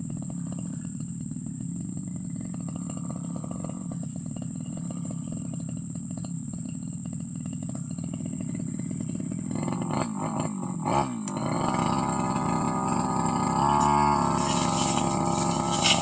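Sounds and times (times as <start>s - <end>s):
brush cutter engine revving: 9.7s - 16.0s.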